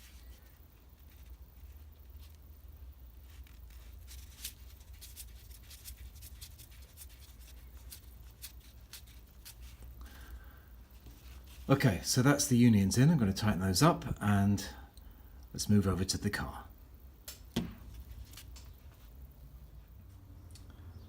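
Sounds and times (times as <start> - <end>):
small clicks and scrapes of threads: 0.0 - 10.0, 17.9 - 19.2
low steady hum: 0.0 - 21.0.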